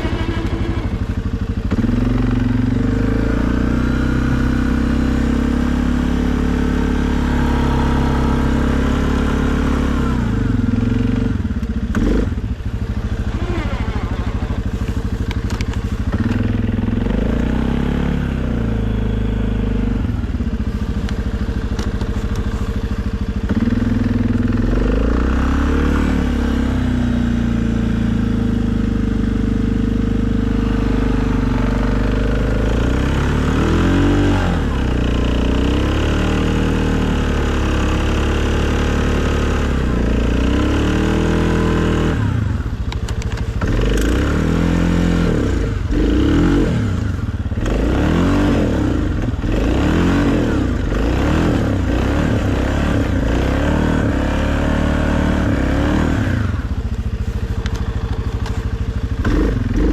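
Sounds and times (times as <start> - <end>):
atv engine revving: 0.0 - 59.9.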